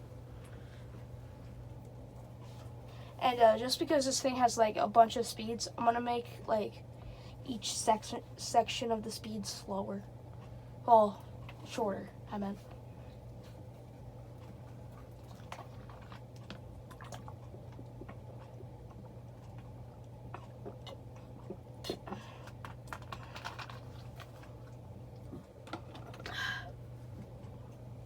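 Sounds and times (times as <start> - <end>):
ceiling fan motor hum: 0.0 - 28.0.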